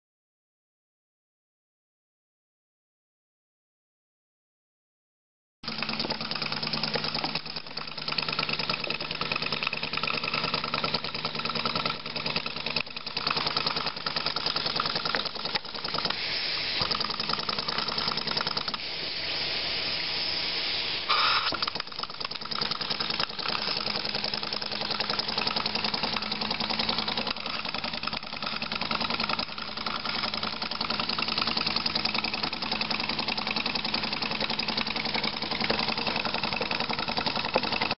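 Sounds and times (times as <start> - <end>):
model steam engine chuffing: 5.6 - 37.9
hissing steam: 13.0 - 37.8.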